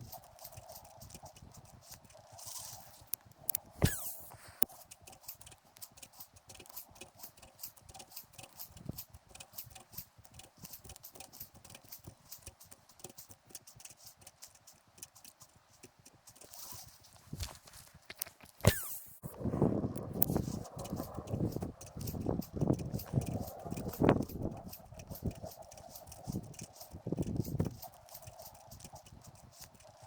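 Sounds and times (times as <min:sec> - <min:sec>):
fishing reel clicking: 0:00.0 - 0:16.9, 0:20.1 - 0:30.0
sharp click: 0:02.5 - 0:15.4, 0:18.2 - 0:19.4.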